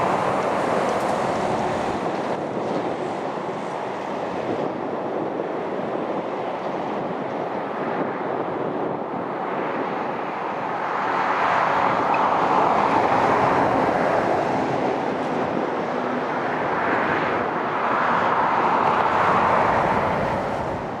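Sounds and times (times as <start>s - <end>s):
jet engine roar: 0.0s - 21.0s.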